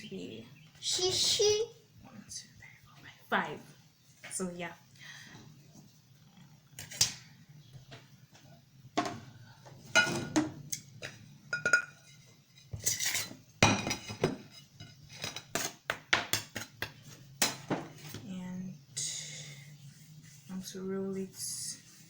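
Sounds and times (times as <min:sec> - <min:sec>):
utensils and dishes clinking: 0:09.9 - 0:15.8.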